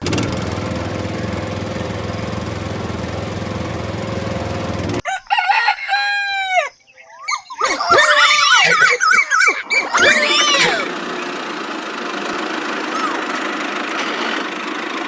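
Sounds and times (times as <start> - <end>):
engine running: 0.0 - 5.0, 10.8 - 15.0
rooster crowing: 5.0 - 11.0.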